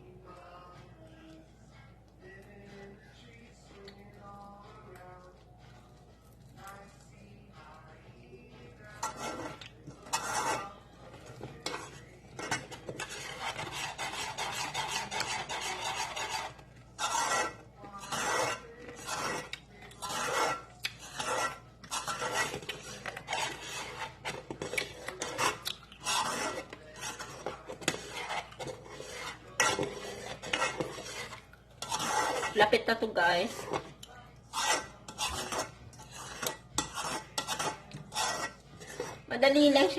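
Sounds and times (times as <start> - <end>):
spoon scraping cooking pan: 7.6 - 39.9.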